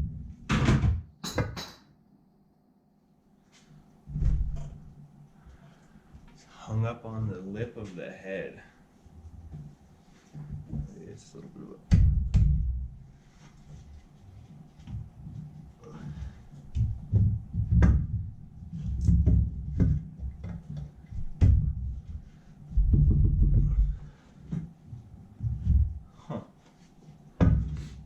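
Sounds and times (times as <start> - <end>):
metal manifold knocking and clunking: 22.8 - 24.0.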